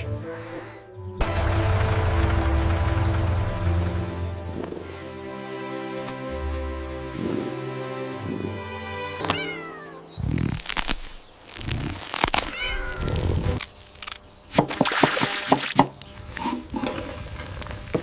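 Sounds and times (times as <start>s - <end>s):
cat meowing: 9.2s - 10.0s, 12.4s - 13.4s.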